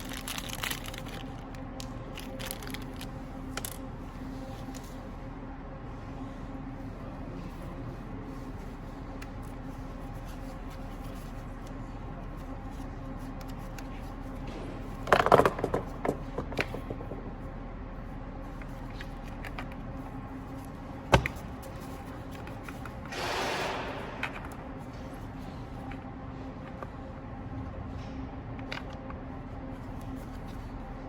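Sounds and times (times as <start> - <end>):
steady background hum: 0.0 - 31.0
short scrape: 23.1 - 24.4.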